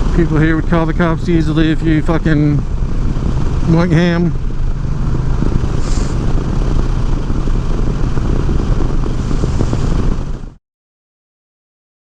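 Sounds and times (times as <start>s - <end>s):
motorcycle engine running: 0.0s - 10.6s
wind on microphone: 0.0s - 10.6s.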